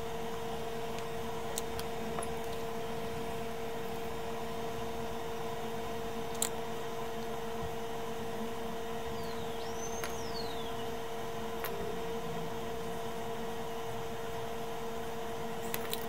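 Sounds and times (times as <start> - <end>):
bench equipment humming: 0.0 - 16.0
thin whistle: 9.2 - 10.9.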